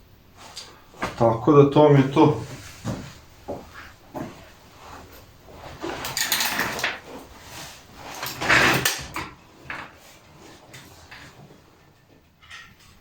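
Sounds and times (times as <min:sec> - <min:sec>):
metal clinking and scraping: 0:05.0 - 0:10.0, 0:10.7 - 0:13.0.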